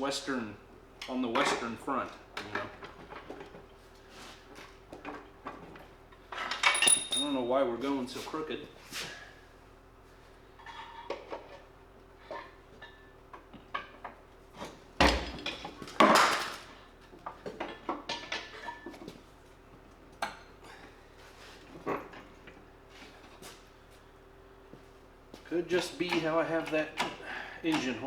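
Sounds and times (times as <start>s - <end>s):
metal clinking and rattling: 5.1s - 7.6s.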